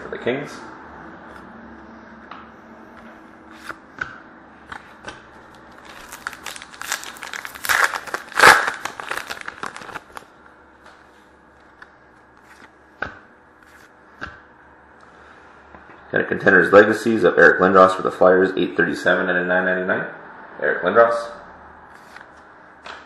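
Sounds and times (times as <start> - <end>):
foil pack crinkling: 5.5 - 10.3.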